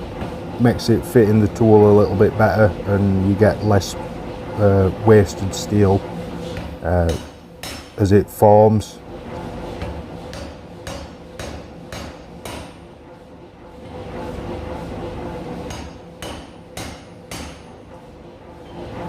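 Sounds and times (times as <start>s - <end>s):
machine hum: 0.0s - 19.0s
power hammer striking hot steel: 6.6s - 8.1s, 9.8s - 12.9s, 15.6s - 17.9s.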